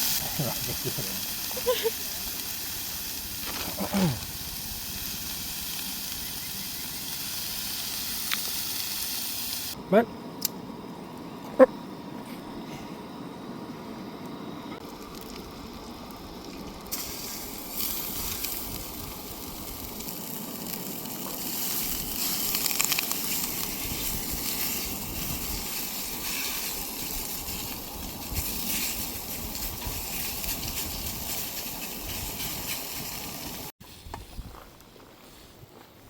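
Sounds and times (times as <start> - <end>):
food sizzling in a frying pan: 0.0 - 9.8, 16.7 - 33.7.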